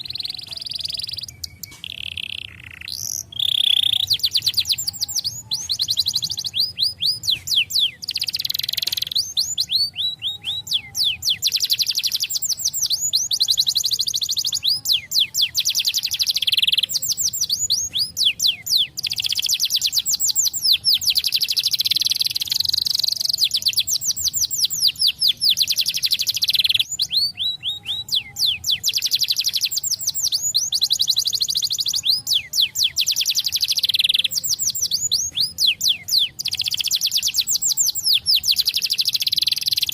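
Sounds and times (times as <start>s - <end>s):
canary singing rapid trills: 0.0s - 39.9s.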